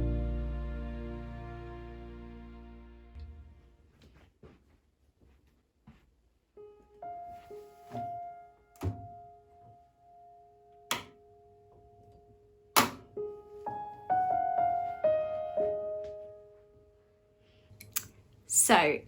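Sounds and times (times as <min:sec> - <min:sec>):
gentle piano music: 0:00.0 - 0:03.4, 0:06.6 - 0:17.7.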